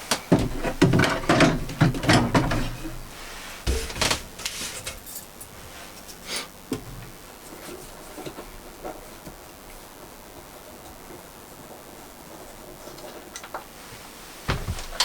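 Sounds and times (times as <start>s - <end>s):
heavy thump: 3.6s - 4.3s, 14.5s - 15.0s.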